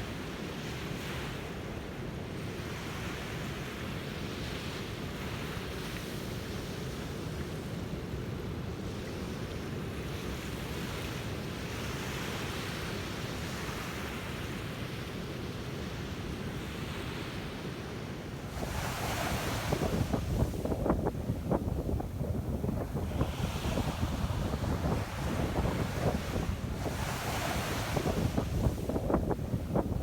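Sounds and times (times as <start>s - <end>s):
sea waves washing onto beach: 16.5s - 30.0s
wind buffeting microphone: 18.5s - 30.0s.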